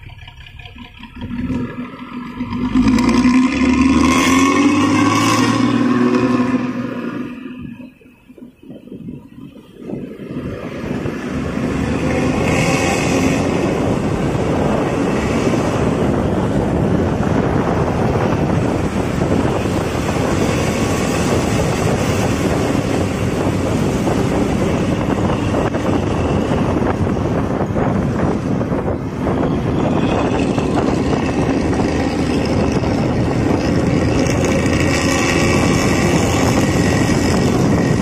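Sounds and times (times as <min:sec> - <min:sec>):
bus diesel engine pulling away: 0:00.0 - 0:07.9, 0:10.2 - 0:38.0
wind on microphone: 0:00.0 - 0:38.0
growling exhaust: 0:29.7 - 0:38.0.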